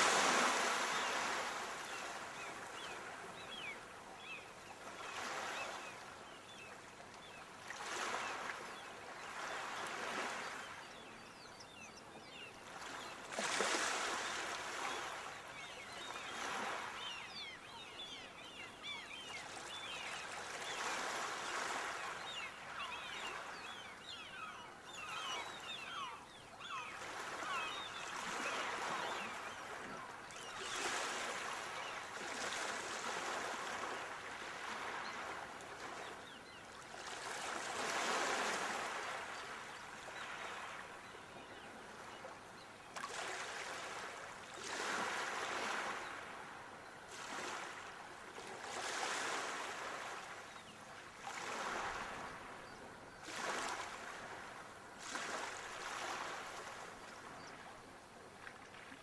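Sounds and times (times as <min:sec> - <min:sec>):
sea waves washing onto shore: 0:00.0 - 0:04.4.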